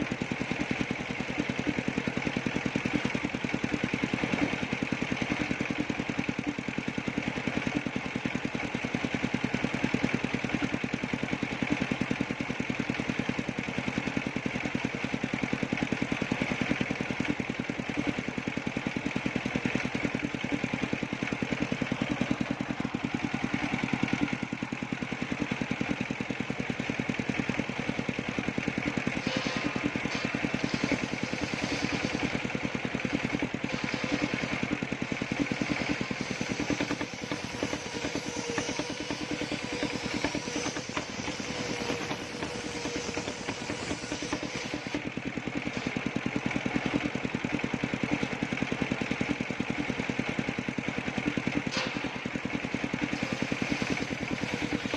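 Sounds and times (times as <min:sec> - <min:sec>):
sawmill engine running: 0:00.0 - 0:54.9.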